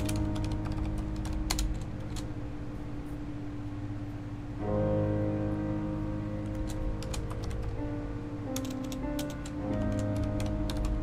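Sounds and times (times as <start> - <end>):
mechanical keyboard keystrokes: 0.0 - 2.3, 6.4 - 7.8, 8.6 - 11.0
slow background music chords: 0.0 - 11.0.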